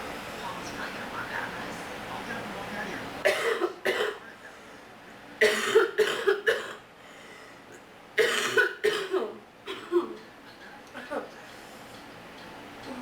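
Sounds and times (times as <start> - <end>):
person coughing: 3.3 - 4.3, 5.4 - 6.8, 8.2 - 10.2.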